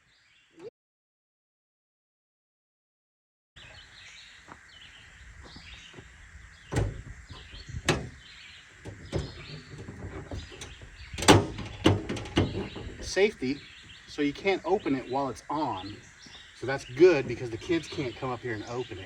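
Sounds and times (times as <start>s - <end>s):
birds chirping: 3.6s - 19.0s
disconnect switch clunks: 6.7s - 8.2s, 8.8s - 13.0s.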